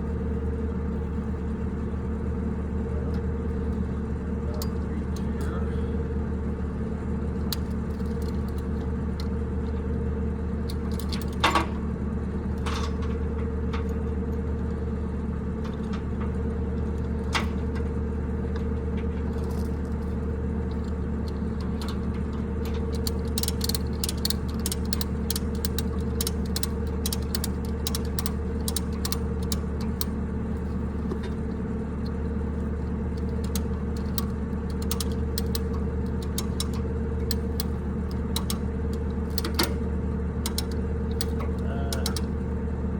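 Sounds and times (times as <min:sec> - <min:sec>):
engine idling: 0:00.0 - 0:42.9
light ticks and clicks: 0:18.6 - 0:30.1, 0:33.1 - 0:42.4.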